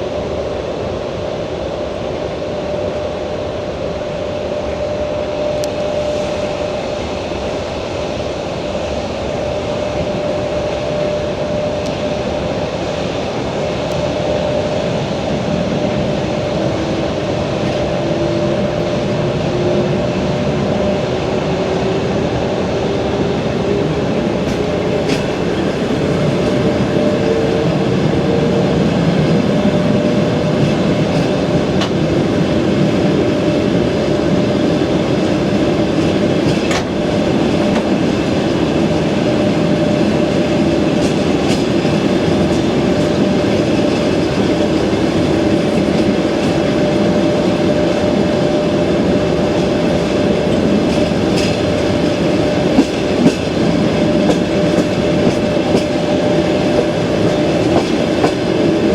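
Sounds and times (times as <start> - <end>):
train running rumble: 0.0 - 58.9
train wheels clattering over rail joints: 24.3 - 28.4, 29.0 - 47.6, 49.6 - 58.9.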